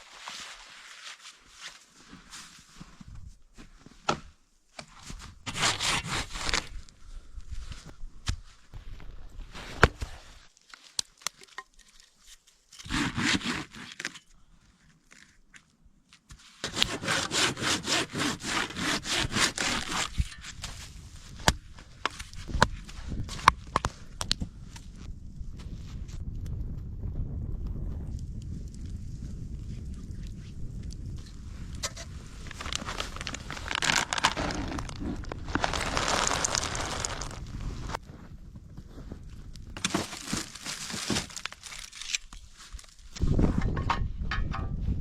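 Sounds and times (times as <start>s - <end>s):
hand saw cutting wood: 5.5s - 6.6s, 12.8s - 14.0s, 16.6s - 20.4s.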